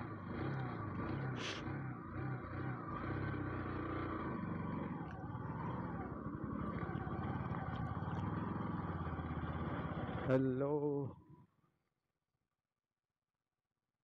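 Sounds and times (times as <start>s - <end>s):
motorcycle engine running: 0.0s - 11.4s.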